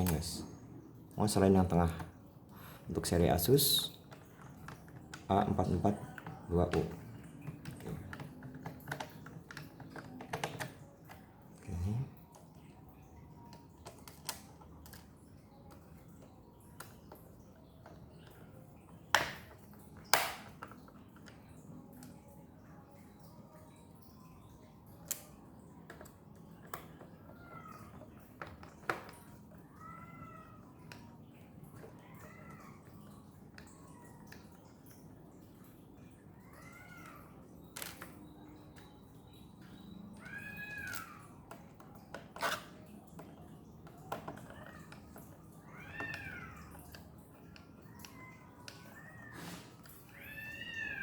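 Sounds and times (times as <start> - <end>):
cat meowing: 45.6 - 46.7, 48.2 - 51.0.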